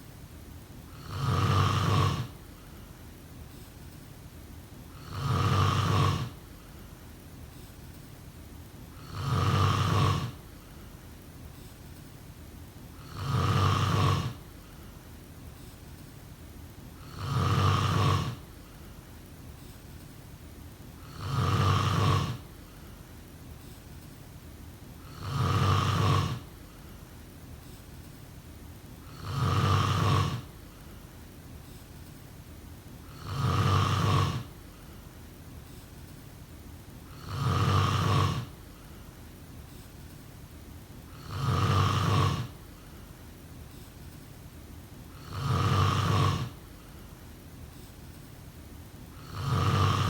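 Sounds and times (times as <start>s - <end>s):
faint steady hiss: 0.0s - 50.0s
person snoring: 0.9s - 2.4s, 4.9s - 6.4s, 9.0s - 10.4s, 13.0s - 14.4s, 17.0s - 18.4s, 21.0s - 22.4s, 25.0s - 26.5s, 29.0s - 30.5s, 33.1s - 34.6s, 37.1s - 38.8s, 41.1s - 42.6s, 45.1s - 46.9s, 49.2s - 50.0s.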